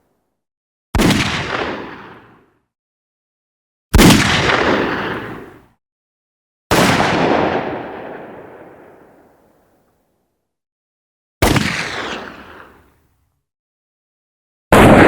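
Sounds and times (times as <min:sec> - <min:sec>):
gunshots: 0:01.0 - 0:02.4, 0:03.9 - 0:05.6, 0:06.7 - 0:09.3, 0:11.4 - 0:12.5, 0:14.7 - 0:15.0.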